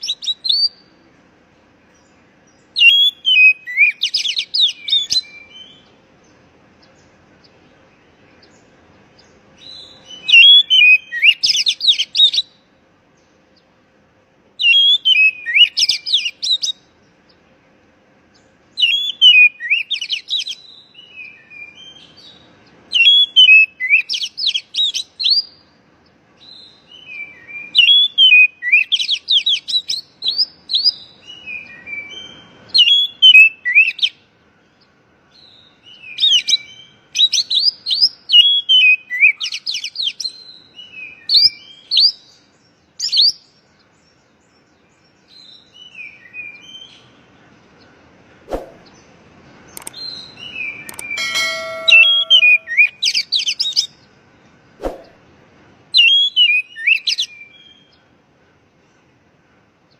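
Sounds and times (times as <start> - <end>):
bird singing whistled notes: 2.0 - 5.9, 9.6 - 12.6, 14.6 - 16.8, 18.8 - 25.6, 26.4 - 34.2, 49.8 - 54.0, 56.0 - 57.9.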